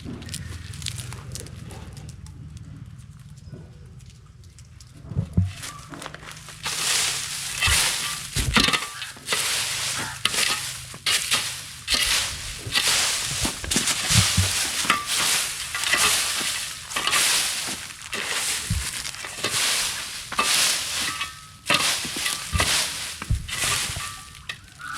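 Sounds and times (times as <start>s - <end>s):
dry stalks crunching and rustling: 0.0s - 24.9s
low thumps: 22.4s - 24.4s.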